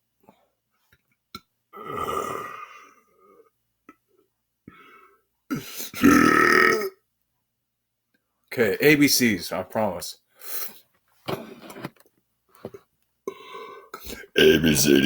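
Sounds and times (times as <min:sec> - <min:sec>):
small throat sounds: 0:01.3 - 0:04.1, 0:13.3 - 0:15.0
man burping: 0:01.7 - 0:02.9, 0:05.5 - 0:07.0, 0:14.0 - 0:15.0.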